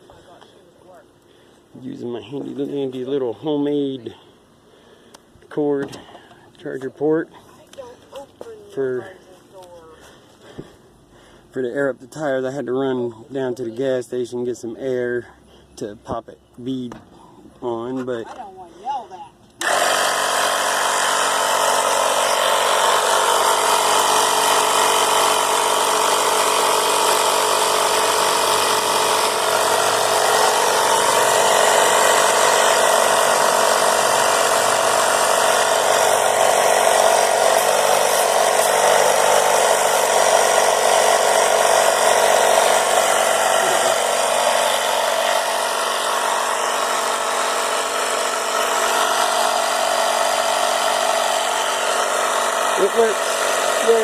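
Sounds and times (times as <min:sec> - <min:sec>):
air compressor running: 0:05.8 - 0:06.6, 0:08.4 - 0:11.6, 0:19.5 - 0:54.0.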